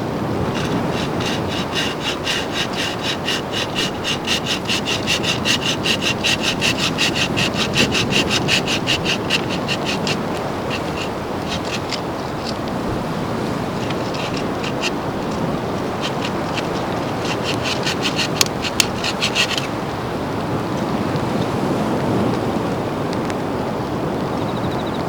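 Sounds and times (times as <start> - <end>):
wind: 0.0 - 25.0
hand saw cutting wood: 0.1 - 19.9.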